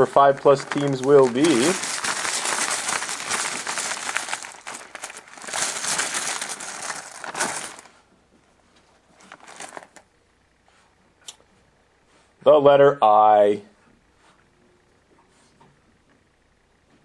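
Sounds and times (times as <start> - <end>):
crinkling by hand: 0.0 - 10.1.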